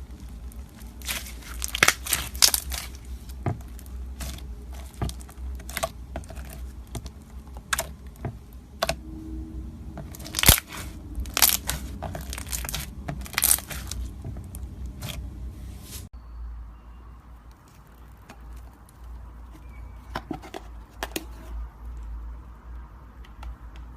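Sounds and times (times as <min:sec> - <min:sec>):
slime crackling and popping: 0:00.0 - 0:09.0, 0:10.0 - 0:15.2
soft slime handling: 0:00.0 - 0:09.0, 0:10.0 - 0:16.1.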